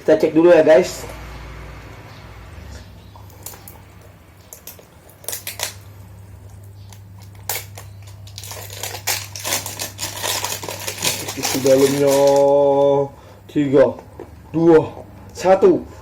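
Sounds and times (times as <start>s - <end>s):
plastic packaging crackling: 3.3s - 5.9s, 6.9s - 13.0s.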